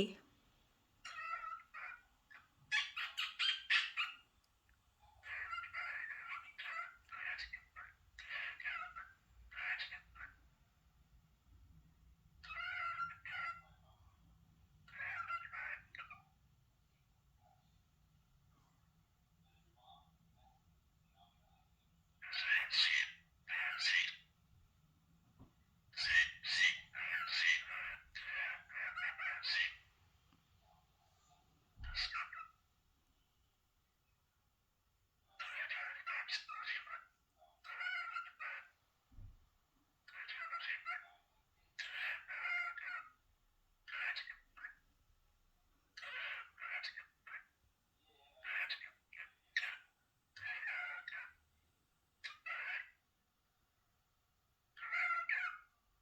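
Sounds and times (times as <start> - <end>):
cockatiel chirping and chattering: 1.0 - 4.3, 5.1 - 10.4, 12.4 - 13.9, 14.8 - 16.3, 22.2 - 24.3, 25.9 - 29.8, 31.8 - 32.6, 35.4 - 38.8, 40.0 - 43.2, 43.8 - 44.9, 46.0 - 47.6, 48.3 - 51.4, 52.2 - 53.0, 54.8 - 55.7.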